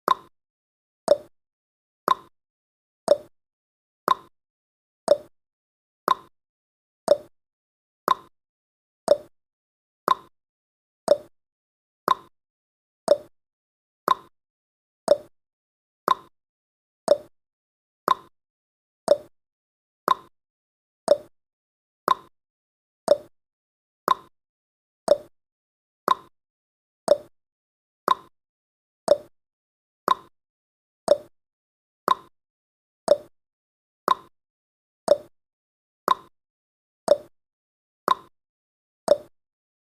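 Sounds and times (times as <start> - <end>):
timer ticking clicks: 0.1 - 0.3, 1.1 - 1.3, 2.1 - 2.3, 3.1 - 3.3, 4.1 - 4.3, 5.1 - 5.3, 6.1 - 6.3, 7.1 - 7.3, 8.1 - 8.3, 9.1 - 9.3, 10.1 - 10.3, 11.1 - 11.3, 12.1 - 12.3, 13.1 - 13.3, 14.1 - 14.3, 15.1 - 15.3, 16.1 - 16.3, 17.1 - 17.3, 18.1 - 18.3, 19.1 - 19.3, 20.1 - 20.3, 21.1 - 21.3, 22.1 - 22.3, 23.1 - 23.3, 24.1 - 24.3, 25.1 - 25.3, 26.1 - 26.3, 27.1 - 27.3, 28.1 - 28.3, 29.1 - 29.3, 30.1 - 30.3, 31.1 - 31.3, 32.1 - 32.3, 33.1 - 33.3, 34.1 - 34.3, 35.1 - 35.3, 36.1 - 36.3, 37.1 - 37.3, 38.1 - 38.3, 39.1 - 39.3.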